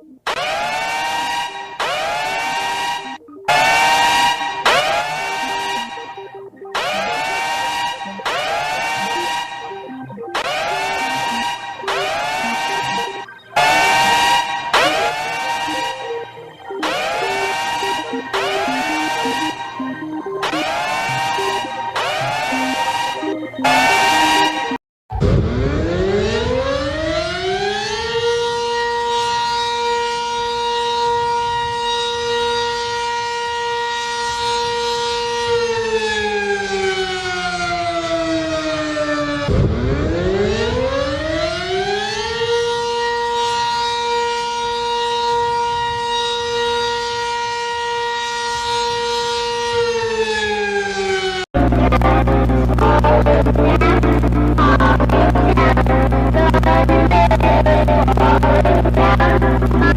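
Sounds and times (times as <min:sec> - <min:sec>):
siren wailing: 0:00.0 - 0:59.9
low steady hum: 0:51.6 - 0:59.9.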